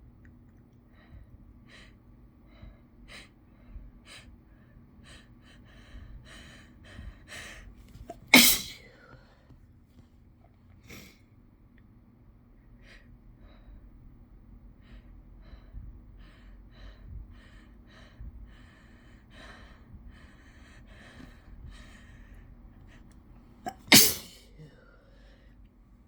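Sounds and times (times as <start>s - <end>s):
person sniffing and gasping: 23.7s - 24.8s.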